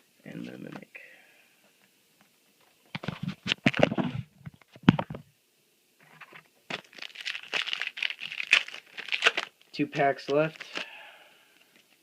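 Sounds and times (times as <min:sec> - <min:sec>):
foil wrapper crinkling: 0:06.7 - 0:10.9.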